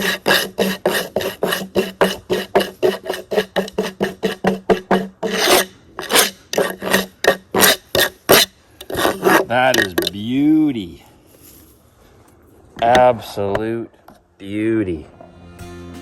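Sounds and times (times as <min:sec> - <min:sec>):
rasping strokes on wood: 0:00.0 - 0:10.2.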